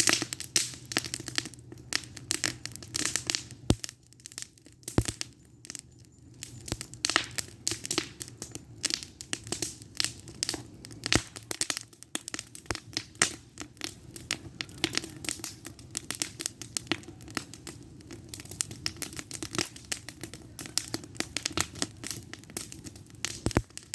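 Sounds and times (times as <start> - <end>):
faint low fire hum: 0.0 - 23.9
wood fire crackling and popping: 0.0 - 23.9.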